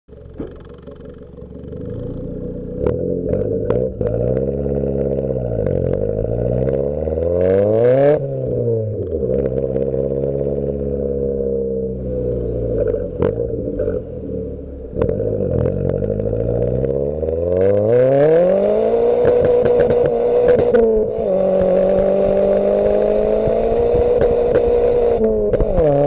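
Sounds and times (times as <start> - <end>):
exhaust pops: 0.1 - 6.9, 12.6 - 17.0, 19.1 - 26.0
car engine revving: 0.1 - 26.0.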